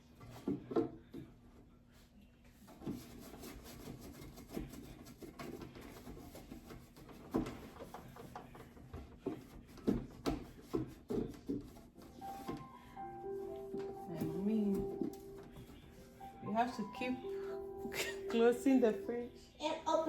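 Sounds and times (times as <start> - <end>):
scrubbing inside refrigerator: 2.0 - 16.7
shelves knocking and clunking: 4.0 - 12.8.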